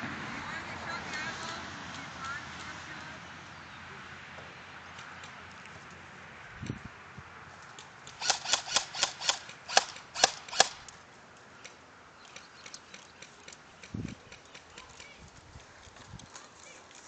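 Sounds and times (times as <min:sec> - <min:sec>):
airsoft gun shots: 0:08.2 - 0:10.8.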